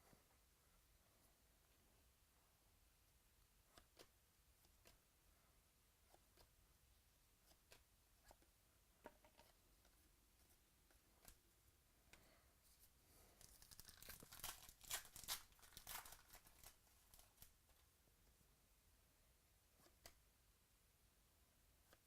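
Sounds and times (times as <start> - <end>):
cards being handled: 13.3 - 17.6
wrapper tearing and crinkling: 13.4 - 17.5.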